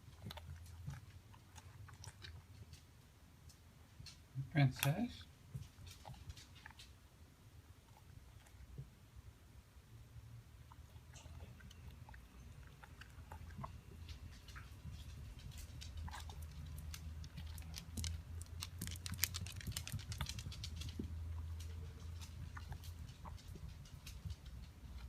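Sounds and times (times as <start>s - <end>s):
low steady hum: 0.0s - 25.0s
dog mouth smacking and clicking: 4.8s - 7.0s, 10.6s - 25.0s.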